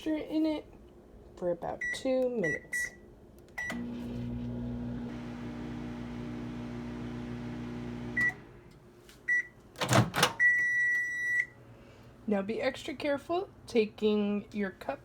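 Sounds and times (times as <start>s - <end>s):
microwave oven humming: 3.6s - 8.8s.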